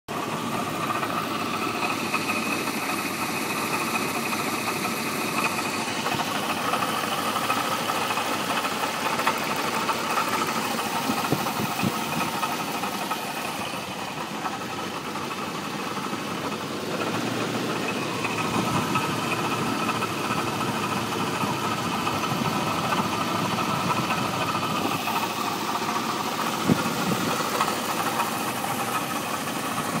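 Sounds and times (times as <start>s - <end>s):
car engine idling with knock: 0.1s - 30.0s.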